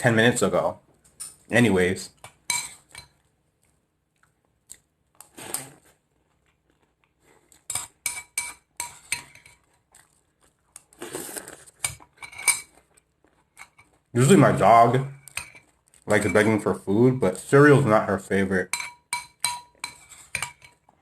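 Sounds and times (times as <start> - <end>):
spoon scraping bowl: 2.5 - 3.1, 7.7 - 9.6, 11.0 - 12.7, 13.6 - 16.6, 18.7 - 20.8
spoon clinking against bowl: 18.7 - 20.8.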